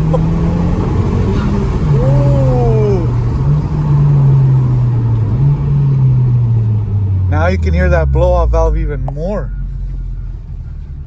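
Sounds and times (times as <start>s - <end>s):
car engine running: 0.0s - 11.0s.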